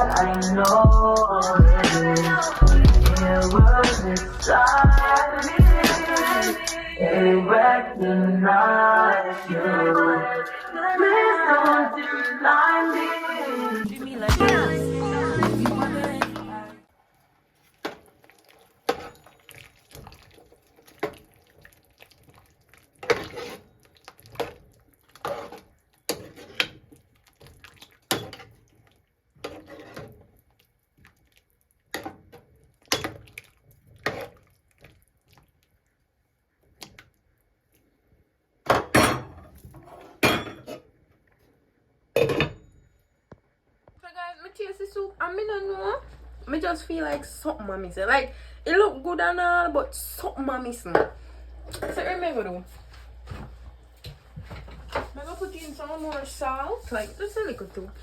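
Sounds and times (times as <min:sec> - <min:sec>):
pots pans and utensils clattering: 0:38.7 - 0:40.8.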